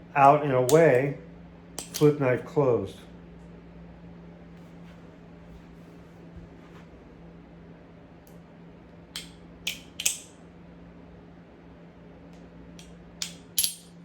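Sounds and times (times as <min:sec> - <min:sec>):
butterfly knife handles clacking: 0:01.8 - 0:02.2.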